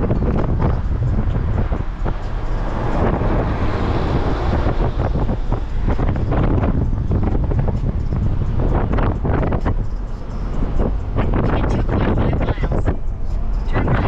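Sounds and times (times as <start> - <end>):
car road noise rumble: 0.0 - 14.0
wind buffeting microphone: 0.0 - 14.0.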